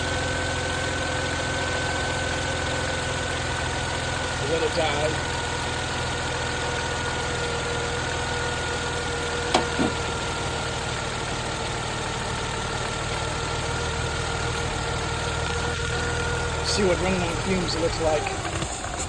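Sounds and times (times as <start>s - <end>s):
car engine idling: 0.0s - 19.0s
steady whine: 9.4s - 10.2s.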